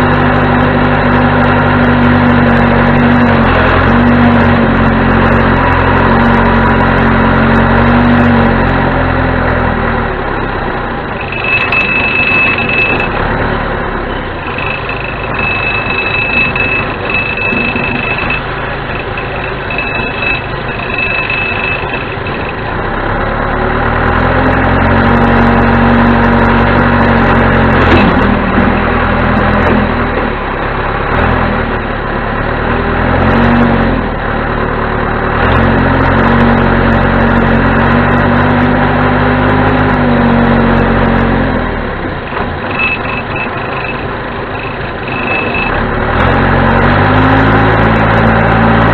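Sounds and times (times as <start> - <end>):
diesel engine running: 0.0 - 48.9
high steady tone: 10.9 - 23.5, 42.2 - 48.9.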